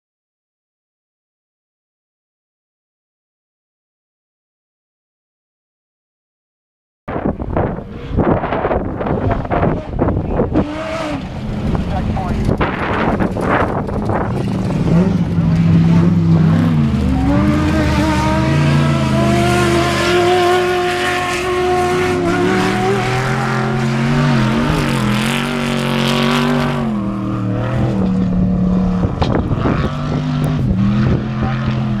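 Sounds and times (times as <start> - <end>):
truck engine revving: 7.2 - 32.0.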